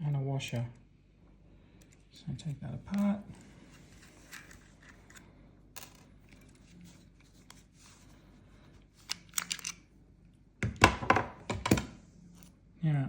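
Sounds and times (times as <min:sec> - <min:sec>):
plastic parts clicking and rattling: 0:09.0 - 0:09.8.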